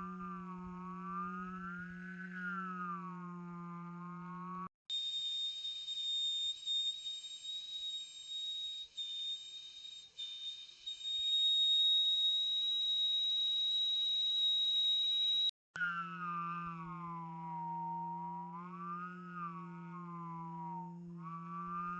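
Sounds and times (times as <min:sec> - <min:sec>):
low buzzing hum: 0:00.0 - 0:04.7, 0:15.8 - 0:21.9
high steady human whistle: 0:04.9 - 0:21.9.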